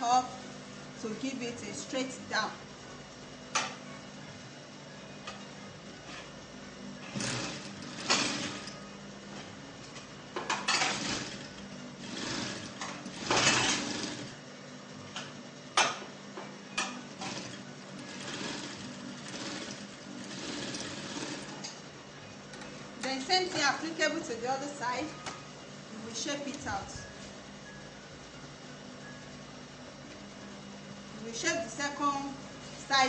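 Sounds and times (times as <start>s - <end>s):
sewing machine stitching: 7.0s - 8.8s, 10.6s - 14.4s, 17.1s - 21.8s.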